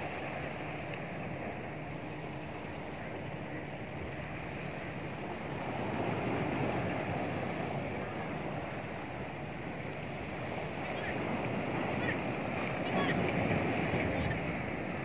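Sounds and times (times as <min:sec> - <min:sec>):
wind buffeting microphone: 0:03.8 - 0:15.0
sea waves washing against rocks: 0:04.4 - 0:15.0.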